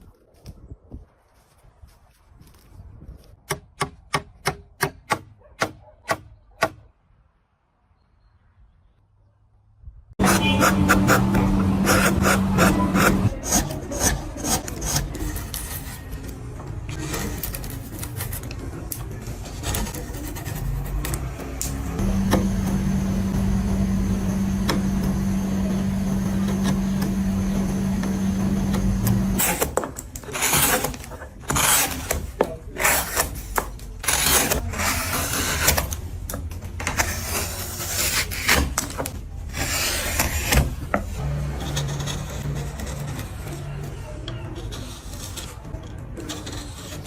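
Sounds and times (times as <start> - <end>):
power tool motor running: 10.2 - 13.4, 21.8 - 29.6
tool cutting wood: 10.2 - 15.9, 19.6 - 36.0.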